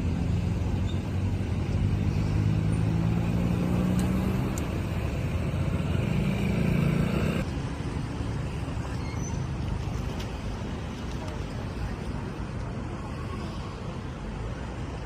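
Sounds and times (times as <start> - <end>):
vehicle engine humming: 0.0 - 7.6
road traffic noise: 0.0 - 15.0.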